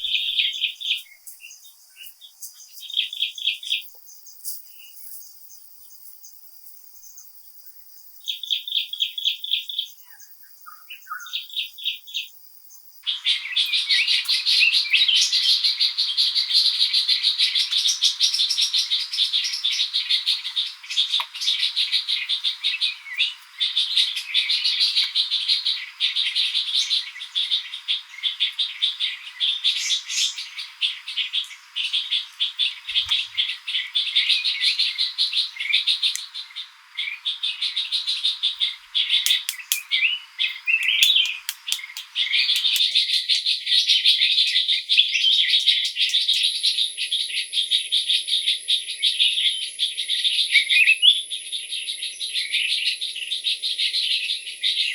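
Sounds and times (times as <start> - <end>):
birds chirping: 0.0 - 5.3, 13.0 - 43.2, 44.3 - 47.4
faint background hiss: 0.0 - 43.2
high-pitched insect whine: 0.0 - 43.2, 44.4 - 54.9
insects trilling: 0.0 - 54.9.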